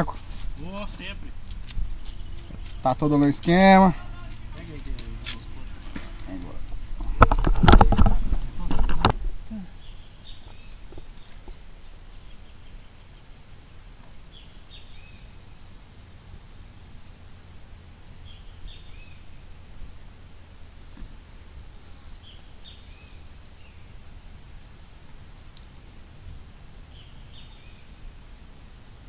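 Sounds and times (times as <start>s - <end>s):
birds chirping: 0.0s - 29.0s.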